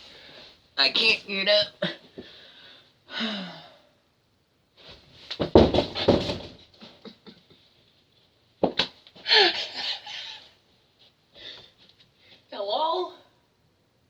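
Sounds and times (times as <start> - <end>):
thumps and rustling: 4.8 - 7.0.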